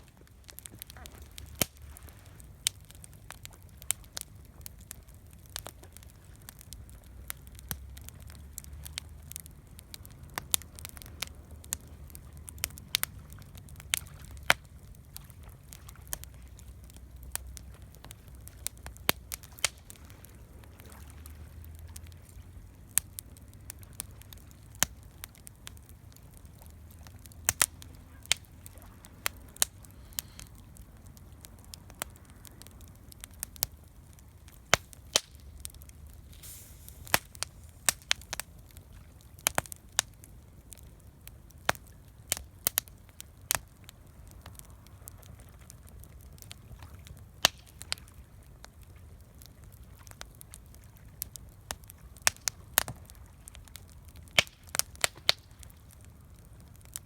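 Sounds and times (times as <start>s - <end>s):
campfire crackling and popping: 0.0s - 57.0s
low rumble of flames: 0.0s - 57.0s.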